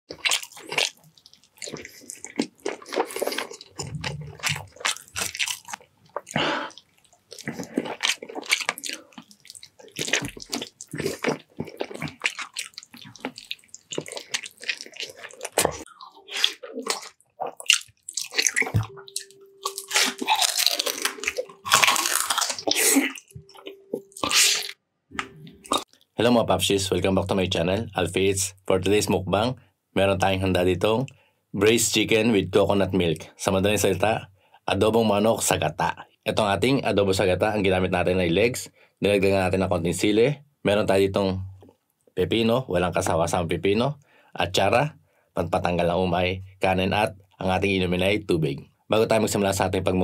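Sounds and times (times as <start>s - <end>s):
wet chewing and biting: 0.1s - 26.0s.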